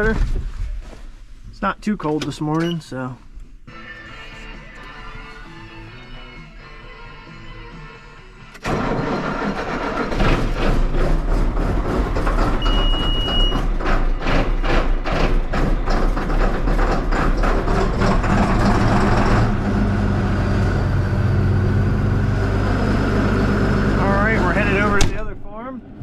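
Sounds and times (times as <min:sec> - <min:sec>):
tractor engine hum: 0:02.0 - 0:26.0
manure spreader rattling and knocking: 0:08.7 - 0:21.0
short high beep: 0:12.6 - 0:13.6.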